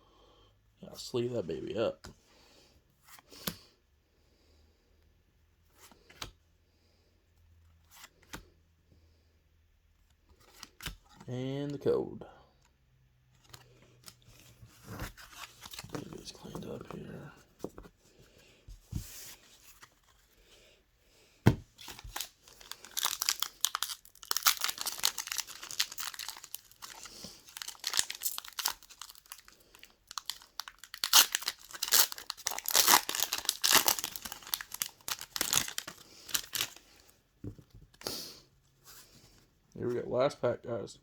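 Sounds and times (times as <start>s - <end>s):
foil wrappers crinkling: 21.8s - 36.8s.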